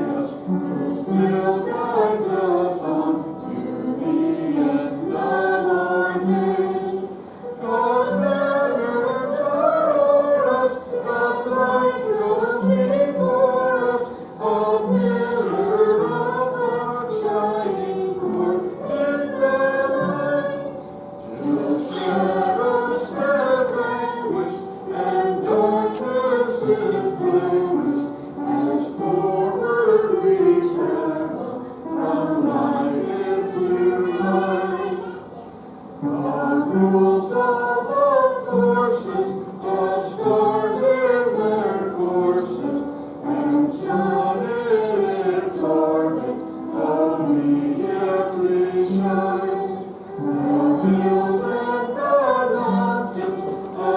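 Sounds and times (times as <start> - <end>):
congregation singing a hymn: 0.0 - 53.9.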